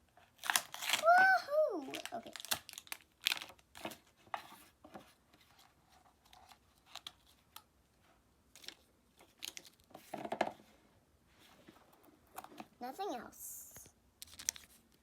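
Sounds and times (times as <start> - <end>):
packaging rustling and clicking: 1.8 - 4.1, 8.6 - 10.4, 14.2 - 14.8.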